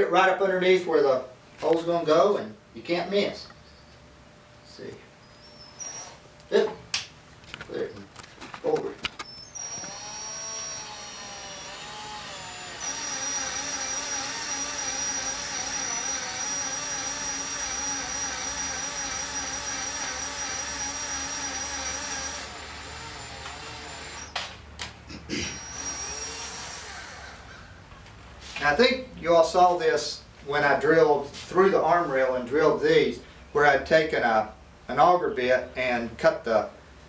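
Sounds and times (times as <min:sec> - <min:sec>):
cordless drill motor whine: 0:05.2 - 0:06.2, 0:09.2 - 0:24.4, 0:25.6 - 0:27.6
drill clicks: 0:09.0 - 0:24.5.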